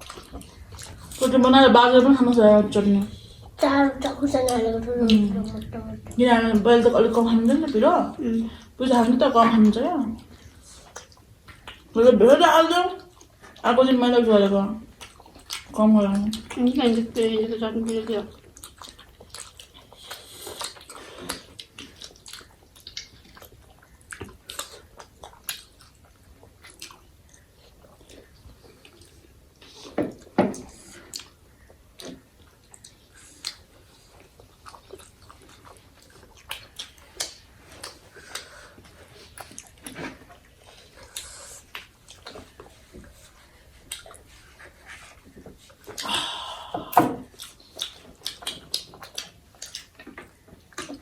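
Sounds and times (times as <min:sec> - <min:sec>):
people chewing and biting food: 0:00.0 - 0:01.4, 0:10.2 - 0:12.0, 0:14.8 - 0:51.0.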